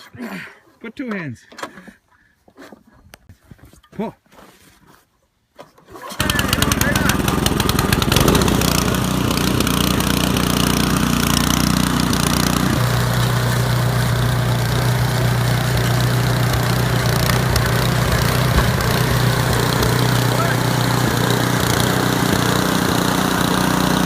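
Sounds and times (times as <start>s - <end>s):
small gas engine running: 5.9s - 24.0s.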